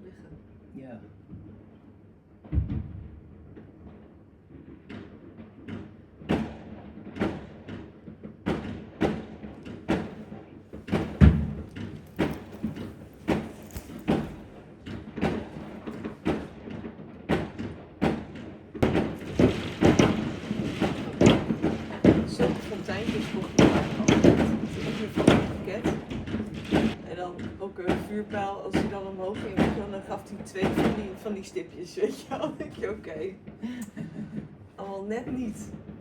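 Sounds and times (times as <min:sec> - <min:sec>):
fireworks bangs: 0:04.5 - 0:27.0.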